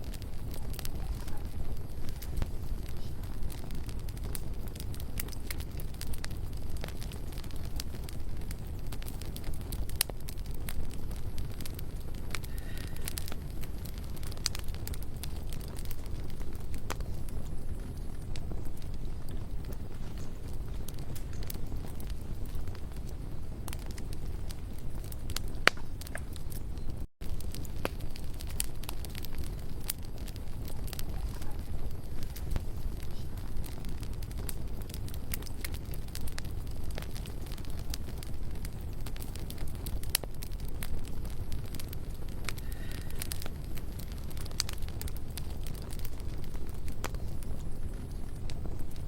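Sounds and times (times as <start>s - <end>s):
low rumble of flames: 0.0s - 49.0s
wood crackling and popping: 0.0s - 49.0s.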